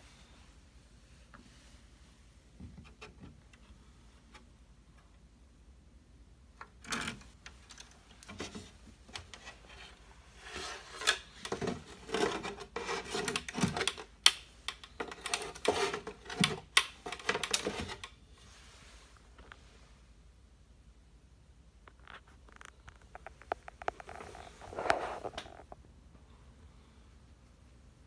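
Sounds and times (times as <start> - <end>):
scraping and rubbing with tools: 8.3 - 14.1, 14.7 - 18.1, 23.3 - 25.7.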